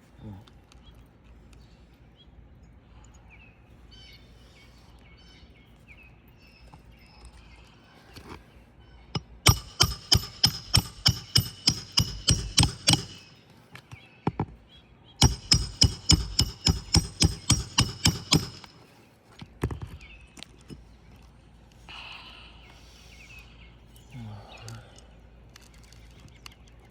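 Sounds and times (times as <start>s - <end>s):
hammer striking metal: 9.2s - 13.4s, 15.2s - 18.8s.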